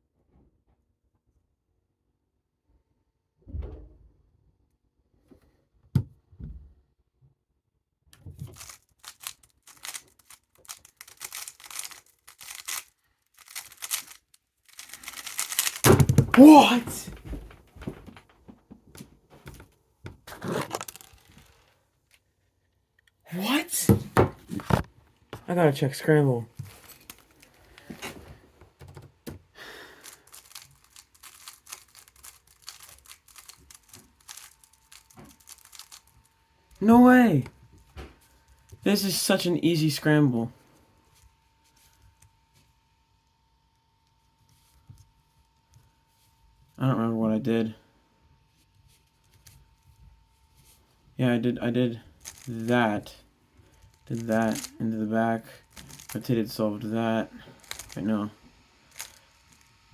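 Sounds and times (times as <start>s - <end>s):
puzzle cube plastic clatter: 8.3s - 18.0s, 19.4s - 21.6s, 29.9s - 36.2s, 52.2s - 54.8s, 55.5s - 56.6s, 57.3s - 58.2s, 58.9s - 59.7s.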